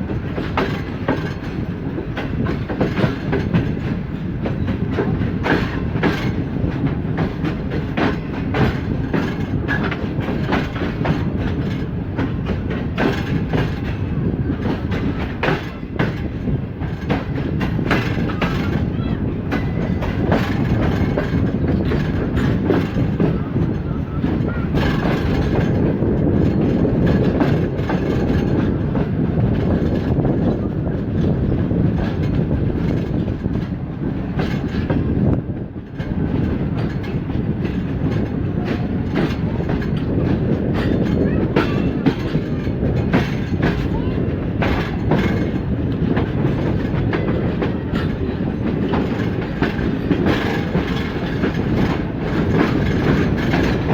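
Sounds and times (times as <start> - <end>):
train coaches rumbling past: 0.0 - 53.9
wheels clicking over rail joints: 0.0 - 53.9.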